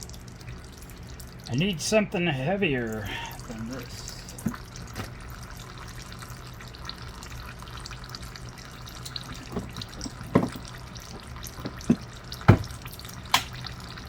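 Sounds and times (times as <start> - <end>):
oil trickling into a pan: 0.0 - 14.0
objects clunking: 9.3 - 13.5.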